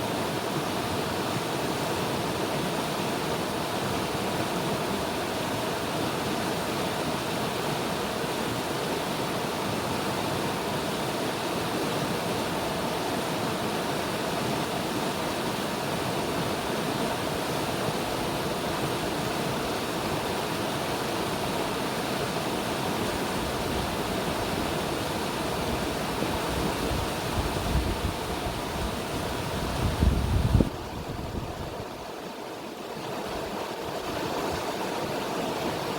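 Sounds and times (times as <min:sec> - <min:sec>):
river water rushing: 0:00.0 - 0:35.9
wind buffeting microphone: 0:25.7 - 0:32.1.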